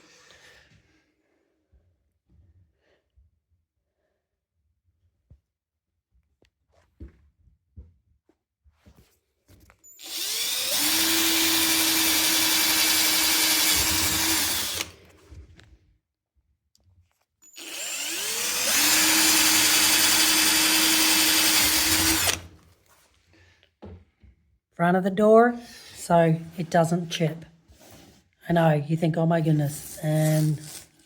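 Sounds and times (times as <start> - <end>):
electric drill boring through wood: 10.0 - 15.1, 17.4 - 22.6.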